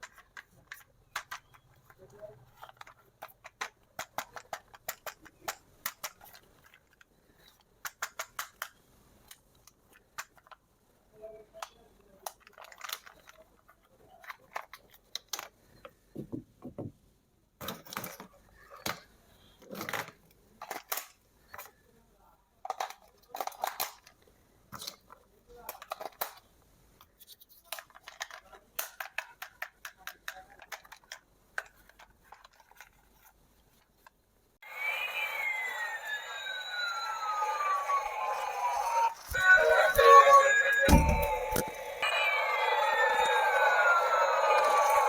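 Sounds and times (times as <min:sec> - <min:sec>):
plastic toys clicking and tapping: 0:00.0 - 0:10.7, 0:11.4 - 0:15.9, 0:17.6 - 0:21.8, 0:22.6 - 0:34.2.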